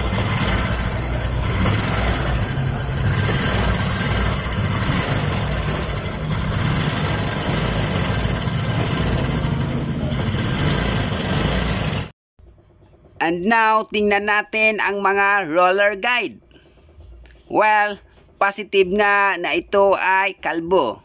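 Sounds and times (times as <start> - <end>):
motorcycle engine idling: 0.0 - 13.2
strange noise from lower engine: 0.0 - 13.2.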